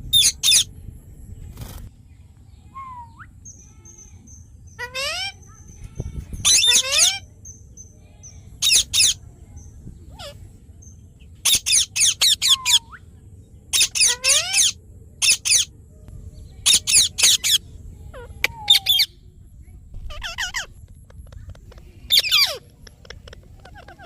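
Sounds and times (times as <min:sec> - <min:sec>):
parakeet screeching calls: 0:00.1 - 0:00.7, 0:04.8 - 0:07.2, 0:08.6 - 0:09.2, 0:11.4 - 0:12.8, 0:13.8 - 0:15.7, 0:16.6 - 0:19.1, 0:20.1 - 0:20.7, 0:22.1 - 0:24.0.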